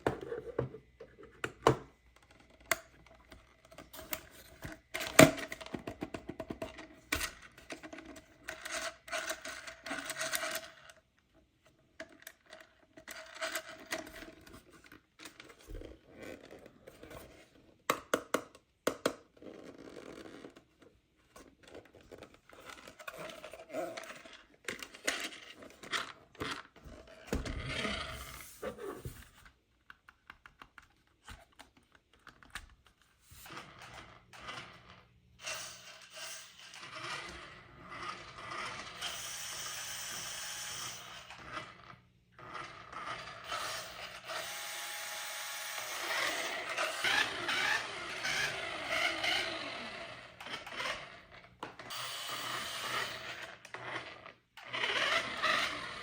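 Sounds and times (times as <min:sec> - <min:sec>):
toy car motor and gears whirring: 0:07.2 - 0:11.0, 0:12.3 - 0:17.4, 0:21.6 - 0:29.4, 0:33.4 - 0:56.0
plastic scraping: 0:19.4 - 0:29.6.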